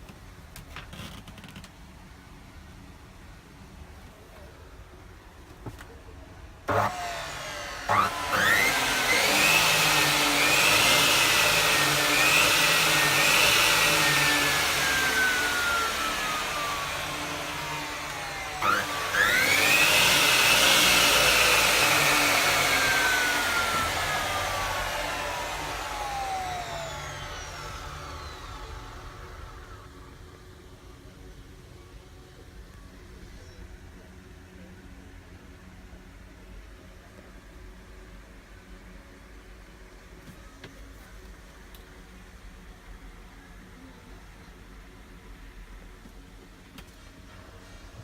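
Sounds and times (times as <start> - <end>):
cutting saw motor whine: 6.7 - 30.2.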